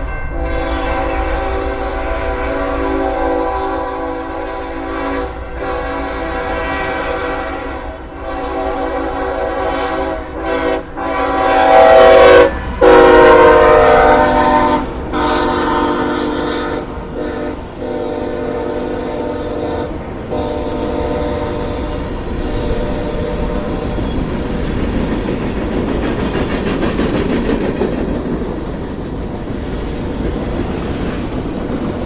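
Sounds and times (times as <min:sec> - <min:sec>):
low rumble of passing train: 0:00.0 - 0:32.0
locomotive air horn blasts: 0:00.3 - 0:24.1.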